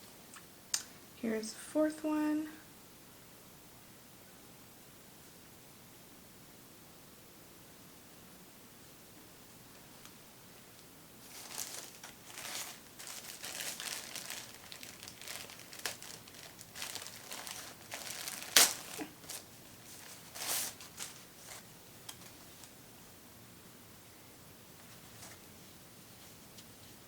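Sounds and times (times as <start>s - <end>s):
packaging bag crinkling: 11.2s - 21.6s.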